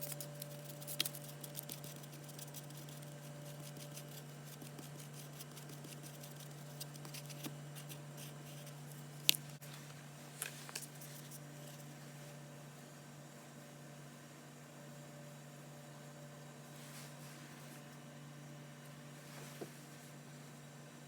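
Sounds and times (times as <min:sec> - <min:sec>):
small tool scraping: 0:00.0 - 0:09.4
steady low hum: 0:00.0 - 0:21.0.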